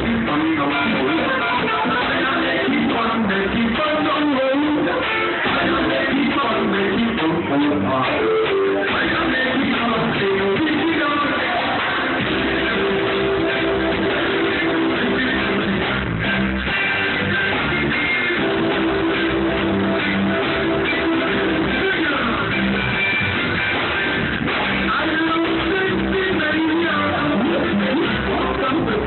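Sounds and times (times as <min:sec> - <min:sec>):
live reggae band playing: 0:00.0 - 0:29.0.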